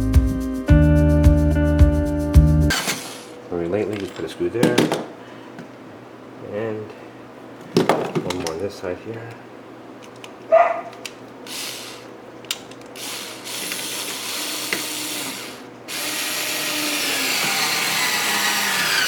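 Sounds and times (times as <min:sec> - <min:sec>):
power drill driving screw into wood: 0:02.7 - 0:03.4, 0:11.5 - 0:12.1, 0:13.0 - 0:19.0.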